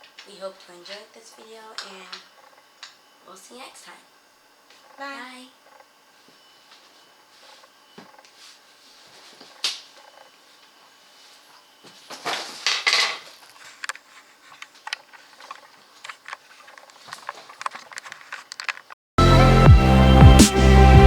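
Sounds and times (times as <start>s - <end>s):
scraping rustles: 10.6s - 19.0s
clicks of small hard objects: 12.6s - 18.9s
electronic music with steady beat: 19.2s - 21.0s.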